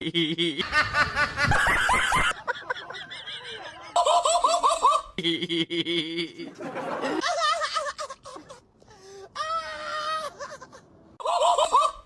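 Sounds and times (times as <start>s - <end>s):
high-pitched laughter: 3.9s - 12.0s.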